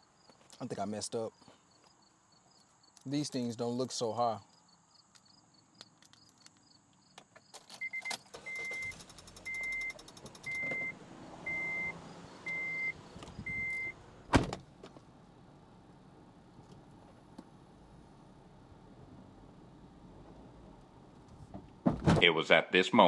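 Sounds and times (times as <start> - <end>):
car warning chime beeping: 7.8 - 14.0
car door slamming: 10.5 - 14.7, 21.2 - 22.3.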